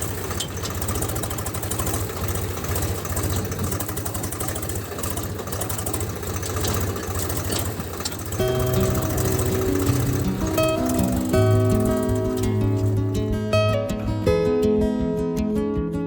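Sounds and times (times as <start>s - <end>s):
small tractor engine running: 0.0s - 14.0s
music: 8.4s - 16.0s.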